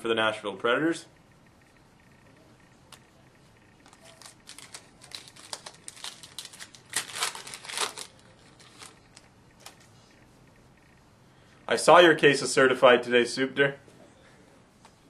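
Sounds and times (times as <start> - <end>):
card pack wrapper crinkling: 3.8 - 9.8.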